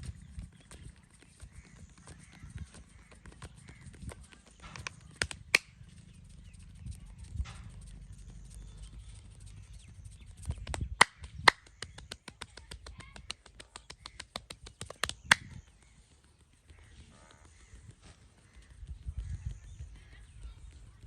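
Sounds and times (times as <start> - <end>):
hands slapping on body: 4.7 - 5.7, 10.6 - 15.6.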